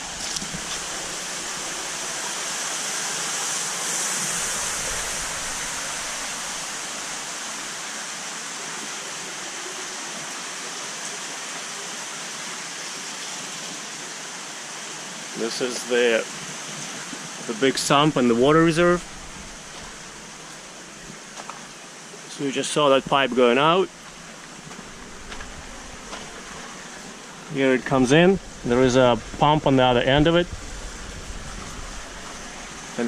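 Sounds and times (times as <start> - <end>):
flowing water rushing: 0.0 - 33.0.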